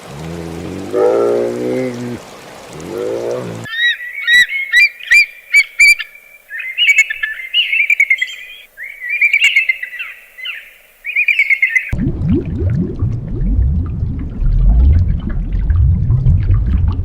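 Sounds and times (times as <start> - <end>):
small bird chirping: 3.7 - 11.9.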